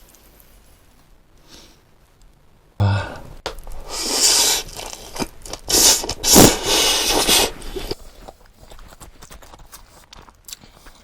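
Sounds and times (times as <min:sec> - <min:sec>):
wet chewing: 0:03.5 - 0:11.0.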